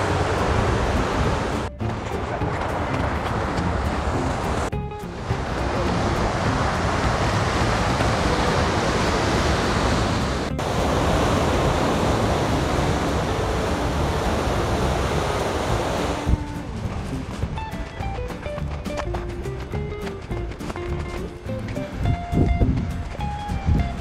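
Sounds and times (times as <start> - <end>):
ocean surf breaking on shore: 0.0 - 16.4
wind buffeting microphone: 0.0 - 18.6, 19.3 - 24.0
background music with melodic notes: 0.0 - 24.0.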